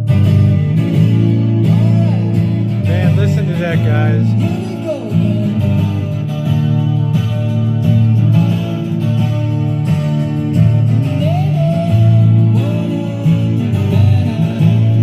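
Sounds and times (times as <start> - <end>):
song with guitar on radio: 0.0 - 15.0
person singing: 1.6 - 7.1.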